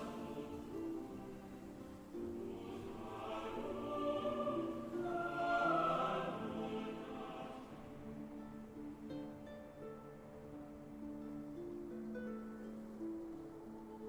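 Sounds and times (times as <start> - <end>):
wordless choir: 0.0 - 9.4
orchestral film music: 0.0 - 14.0.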